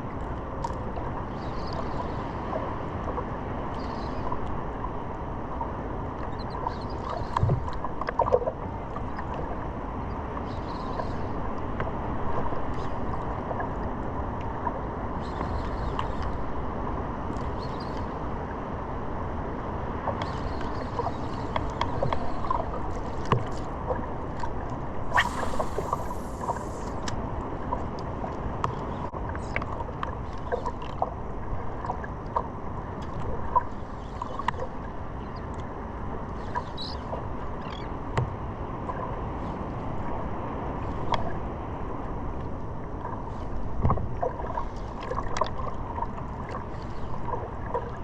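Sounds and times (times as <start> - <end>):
wind: 0.0 - 48.0
bright splash: 25.1 - 26.9
small clicks and splashes: 43.8 - 48.0.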